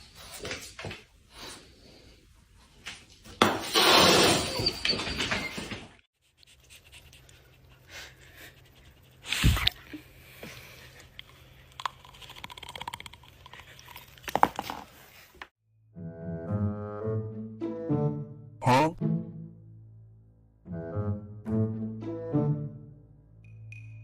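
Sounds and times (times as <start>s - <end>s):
dog chewing and crunching: 11.2s - 14.8s.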